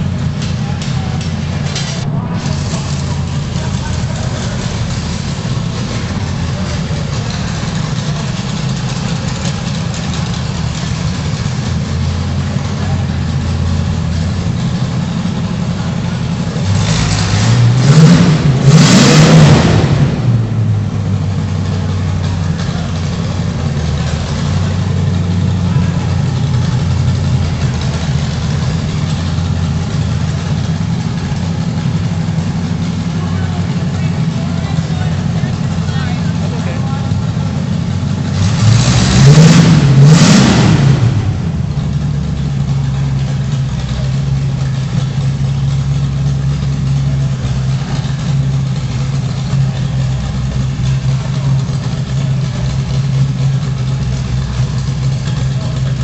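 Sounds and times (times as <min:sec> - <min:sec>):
lawn mower engine running: 0:00.0 - 0:17.8, 0:20.6 - 0:39.2.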